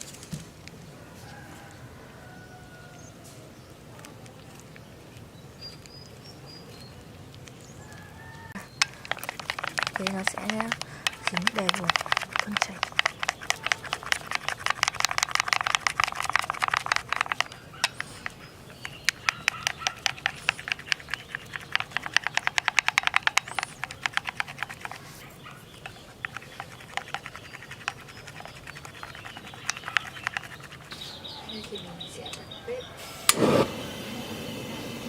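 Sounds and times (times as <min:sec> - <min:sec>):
fish stirred through batter: 0:07.0 - 0:31.4.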